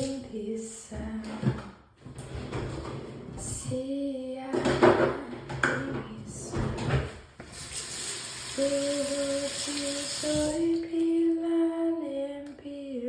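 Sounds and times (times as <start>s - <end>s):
woman singing softly: 0.0s - 1.6s, 3.4s - 6.9s, 8.5s - 13.0s.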